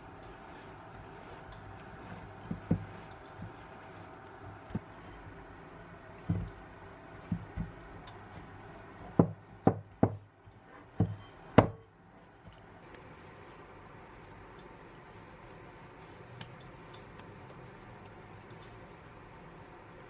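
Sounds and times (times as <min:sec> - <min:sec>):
knocks on a hard surface: 0:09.2 - 0:10.2.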